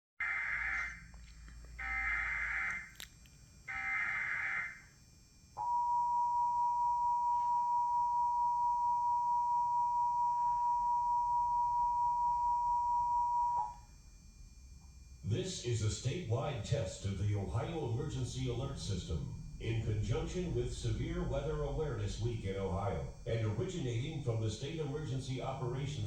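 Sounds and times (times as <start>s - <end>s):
digital data bursts: 15.4s - 26.0s.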